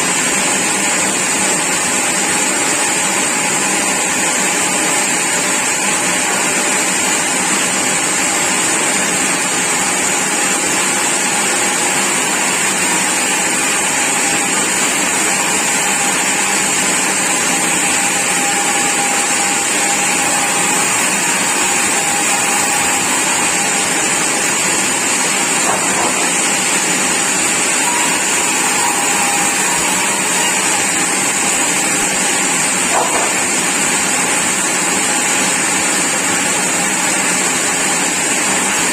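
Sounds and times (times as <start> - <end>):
sawmill machinery running: 0.0 - 38.9.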